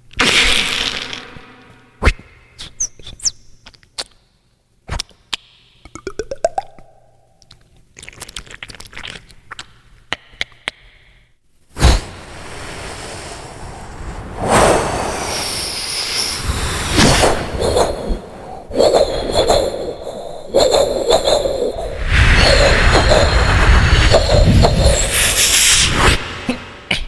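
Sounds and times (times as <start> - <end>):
beatboxing mouth clicks and knocks: 2.0 - 4.2, 4.9 - 11.1
beatboxing rising sweep: 11.8 - 27.0
beatboxing noisy rush: 15.8 - 27.0.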